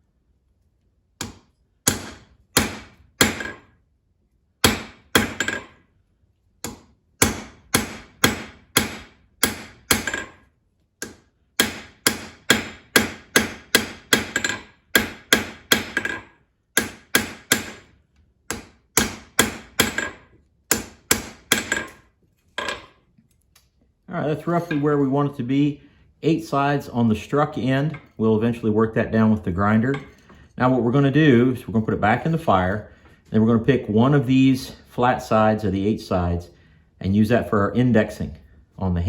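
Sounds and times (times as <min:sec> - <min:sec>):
hammer striking steel on anvil: 0:01.2 - 0:03.7, 0:04.6 - 0:05.8, 0:06.6 - 0:10.4, 0:11.0 - 0:17.8, 0:18.5 - 0:22.0.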